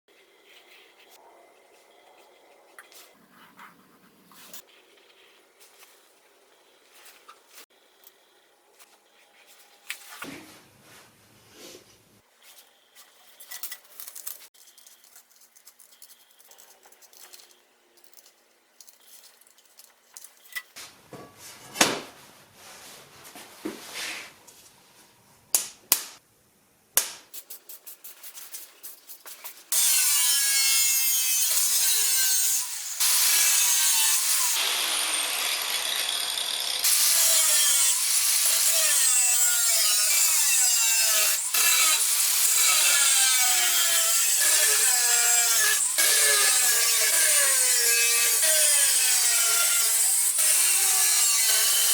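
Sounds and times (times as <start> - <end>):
power tool grinding steel: 29.7 - 51.9.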